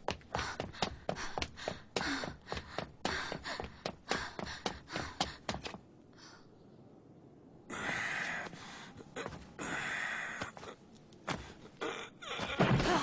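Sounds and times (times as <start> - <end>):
heavy breathing: 0.3 - 6.5.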